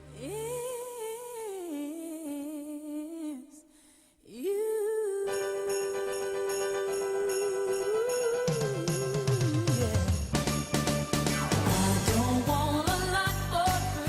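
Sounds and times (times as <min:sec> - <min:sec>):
band with sleigh bells: 0:05.4 - 0:14.0.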